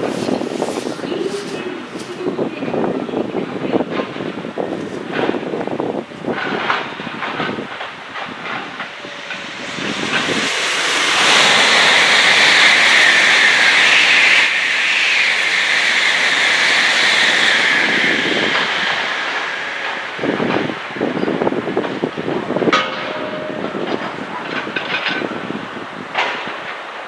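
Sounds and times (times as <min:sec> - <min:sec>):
freight train rushing past: 0:00.0 - 0:27.0
high whine: 0:06.8 - 0:24.0.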